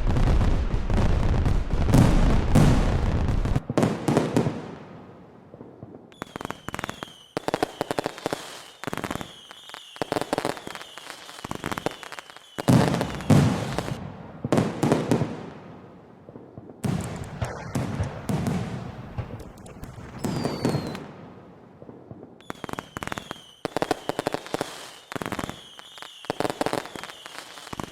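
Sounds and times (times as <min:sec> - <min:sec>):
fireworks booming: 0:00.0 - 0:07.5, 0:12.6 - 0:24.2
fireworks crackling and popping: 0:00.0 - 0:27.9
fireworks whistling: 0:06.1 - 0:14.0, 0:16.8 - 0:21.2, 0:22.4 - 0:27.9.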